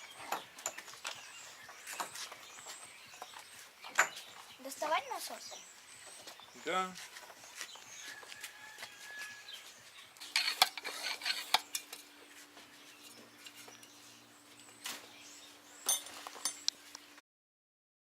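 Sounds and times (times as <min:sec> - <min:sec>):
metallic clinks of tools: 0:15.8 - 0:16.7.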